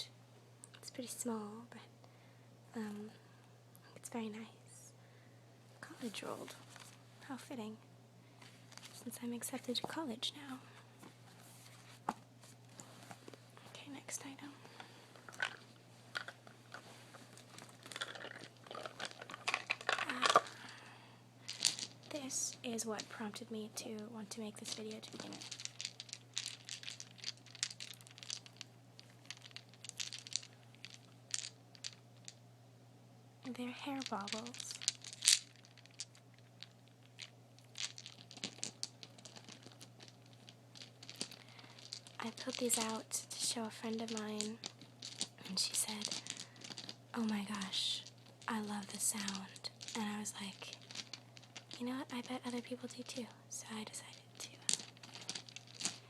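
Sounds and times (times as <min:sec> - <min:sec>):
hands rummaging with crinkling: 0:14.7 - 0:20.8, 0:21.4 - 0:23.4, 0:24.6 - 0:32.3, 0:33.5 - 0:56.0.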